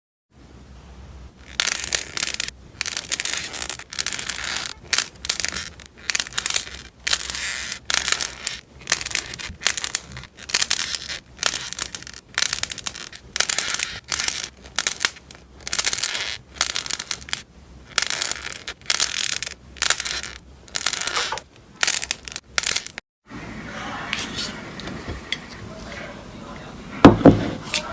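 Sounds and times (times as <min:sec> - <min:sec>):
crunchy slime crackling: 0:01.4 - 0:23.0.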